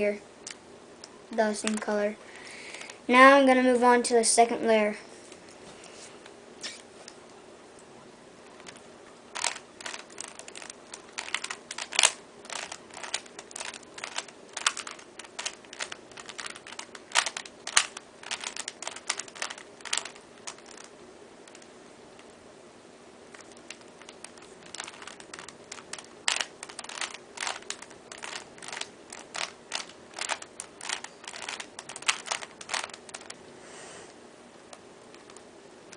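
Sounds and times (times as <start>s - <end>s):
plastic puzzle cube clicking: 9.4s - 20.9s, 23.4s - 33.3s.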